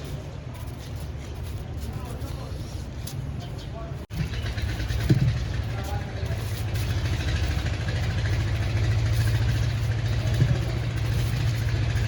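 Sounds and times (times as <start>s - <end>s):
engine running: 4.1s - 12.0s.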